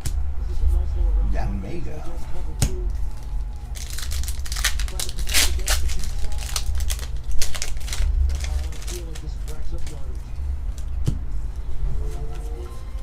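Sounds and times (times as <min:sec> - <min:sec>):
steady low hum: 0:00.0 - 0:13.0
foil wrapper crinkling and tearing: 0:03.1 - 0:10.1.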